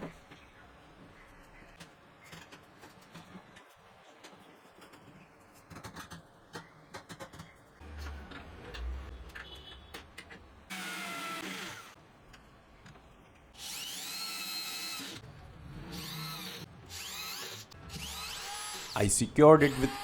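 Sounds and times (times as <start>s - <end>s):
power drill driving screws: 10.7s - 12.0s, 13.6s - 15.2s, 19.7s - 20.0s.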